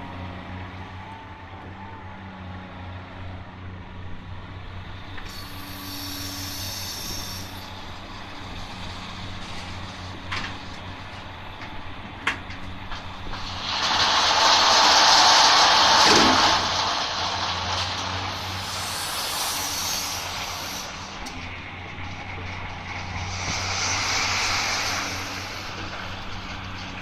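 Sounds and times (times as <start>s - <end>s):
heavy diesel machinery running: 0.0s - 27.0s
burst of hiss: 5.3s - 9.1s, 13.1s - 21.6s, 23.1s - 26.8s
loud rushing noise: 13.0s - 27.0s.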